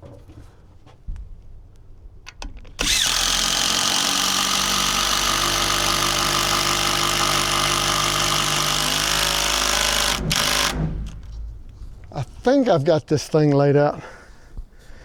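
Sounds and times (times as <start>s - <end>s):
power tool motor running: 2.8s - 11.3s.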